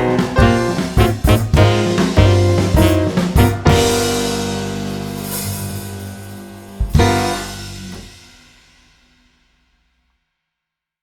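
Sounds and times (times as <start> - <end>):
held instrumental chord: 0.0 - 7.8.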